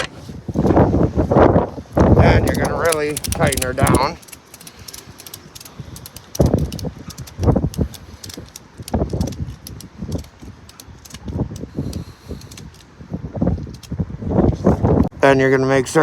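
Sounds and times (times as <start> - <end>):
ratchet strap cranking: 2.2 - 12.9
ratchet clicking: 2.4 - 12.8.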